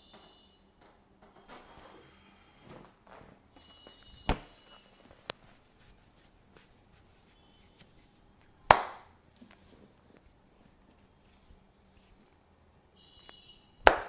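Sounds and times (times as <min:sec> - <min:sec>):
hands rubbing over skin: 0:05.1 - 0:08.5, 0:09.4 - 0:12.4
sharp crack: 0:08.7 - 0:09.1
smack: 0:08.7 - 0:09.1.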